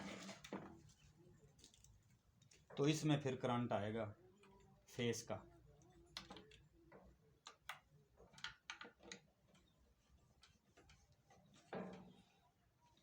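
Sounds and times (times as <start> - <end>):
clicks and taps of wire hardware: 6.1 - 9.7.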